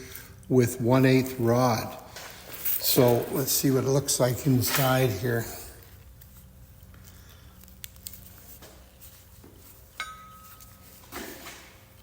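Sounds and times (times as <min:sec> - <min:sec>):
steady low hum: 0:00.0 - 0:12.0
short metallic ring: 0:10.0 - 0:11.0.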